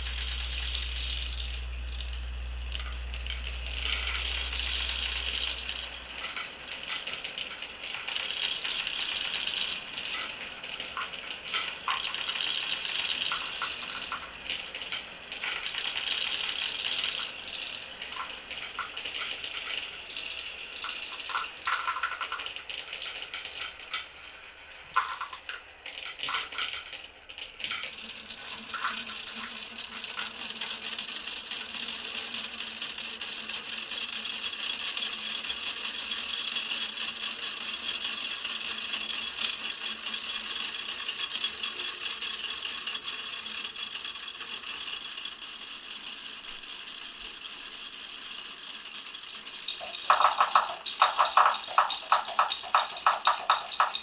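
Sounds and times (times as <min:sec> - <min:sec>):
marbles rolling on wooden run: 0:02.7 - 0:05.6, 0:06.2 - 0:24.0, 0:25.0 - 0:27.0, 0:27.7 - 0:31.4, 0:46.3 - 0:54.0.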